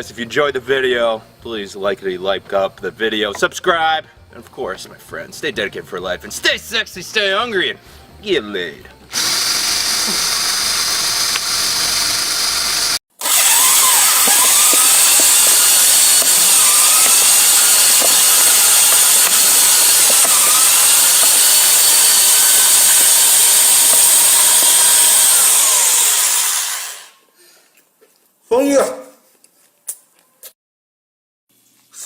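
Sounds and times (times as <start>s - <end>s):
power drill whining: 9.1s - 27.2s.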